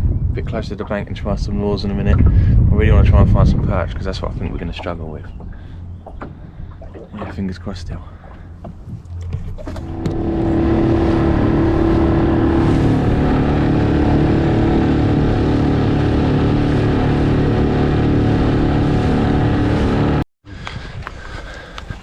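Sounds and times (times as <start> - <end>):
outboard motor running: 3.7 - 20.2.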